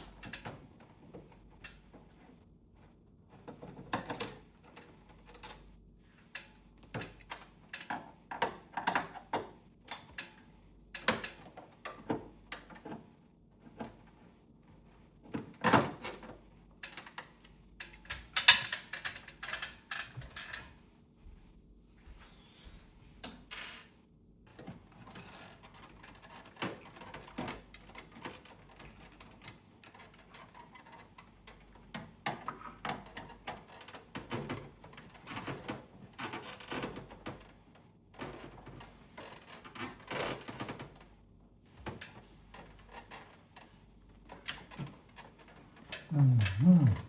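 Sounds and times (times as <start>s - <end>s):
faint steady hum: 46.1s - 47.0s.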